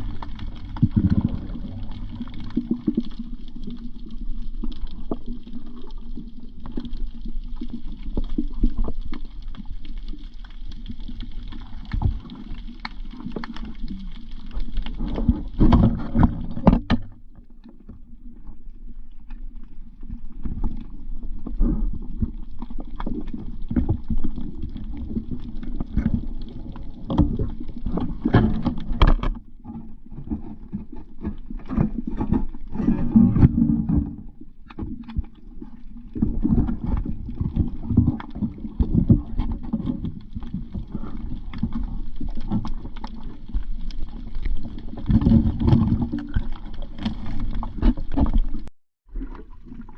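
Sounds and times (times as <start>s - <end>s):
bubbling: 0.0s - 49.9s
muffled underwater rumble: 0.0s - 49.9s
underwater knocks: 15.2s - 17.4s.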